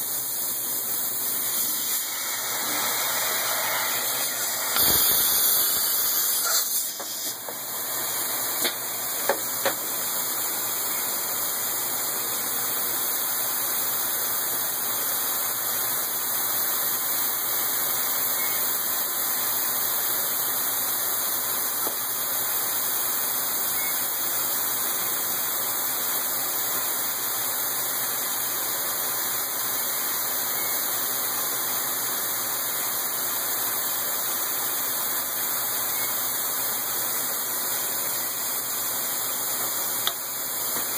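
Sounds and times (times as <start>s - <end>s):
machine tool running: 0.0s - 11.7s.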